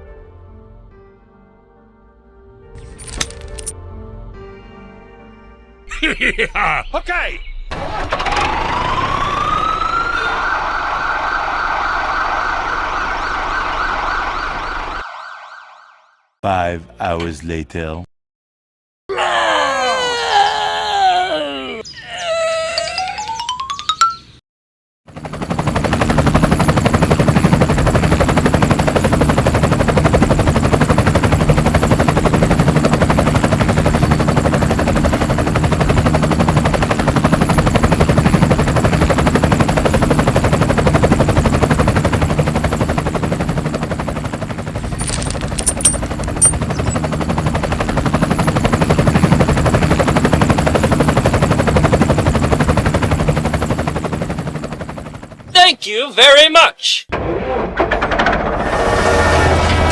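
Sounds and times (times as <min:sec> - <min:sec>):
small engine running: 0:07.7 - 0:09.7, 0:25.1 - 0:55.4, 0:58.6 - 0:59.9.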